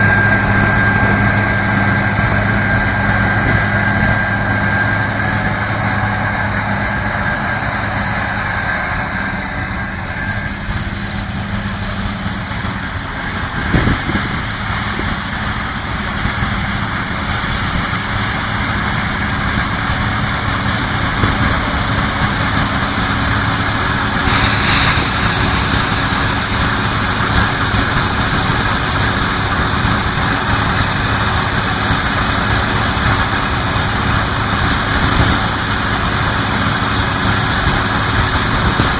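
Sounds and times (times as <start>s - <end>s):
farm machinery engine hum: 0.0s - 38.9s
brief hiss: 24.2s - 27.3s.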